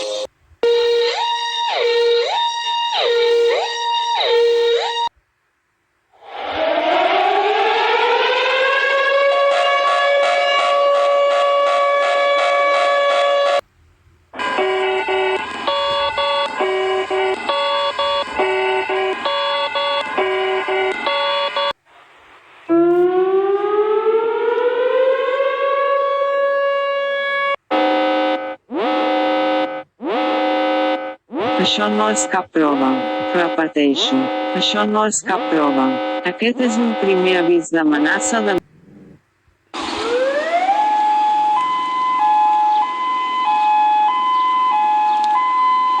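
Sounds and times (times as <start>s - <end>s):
air-raid siren winding up: 0.0s - 5.1s, 6.2s - 13.6s, 14.4s - 21.8s, 39.7s - 46.0s.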